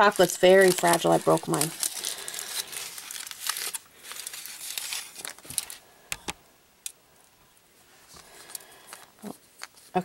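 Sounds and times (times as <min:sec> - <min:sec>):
wrapper crinkling: 0:00.0 - 0:05.8, 0:08.2 - 0:10.0.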